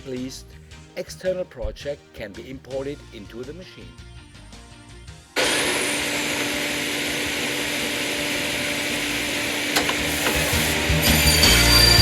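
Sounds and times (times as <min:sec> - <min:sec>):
saw machine whirring: 0:05.4 - 0:12.0.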